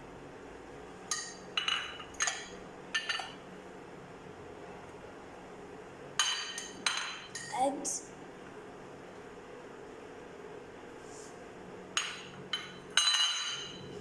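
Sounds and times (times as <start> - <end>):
utensil clinking against bowl: 12.0 - 13.9.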